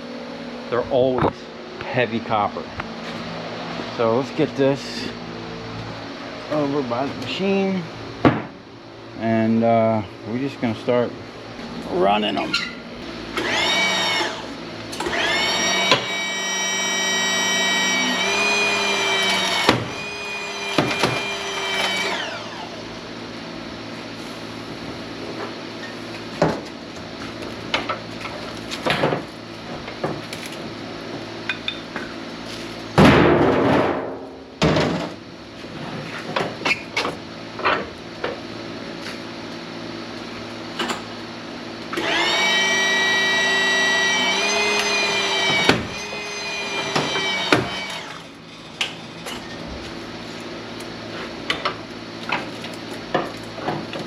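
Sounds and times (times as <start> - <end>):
steady low hum: 0.0 - 33.2
machine whine: 11.6 - 23.2, 41.9 - 49.6
loud harsh noise: 13.1 - 22.9, 42.0 - 48.4.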